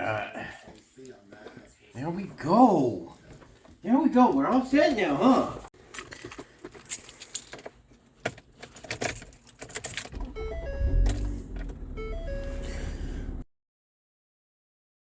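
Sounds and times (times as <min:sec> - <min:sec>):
low rumble: 0:10.2 - 0:13.4
short steady tones: 0:10.2 - 0:13.4.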